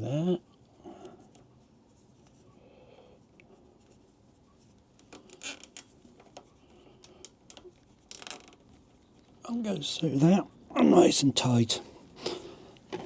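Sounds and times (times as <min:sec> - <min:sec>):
cable tie scratching: 0:07.4 - 0:09.1.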